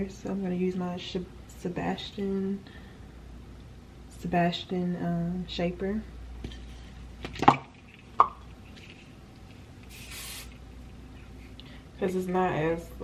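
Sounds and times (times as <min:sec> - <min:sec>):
hairspray aerosol hiss: 0:09.9 - 0:10.6.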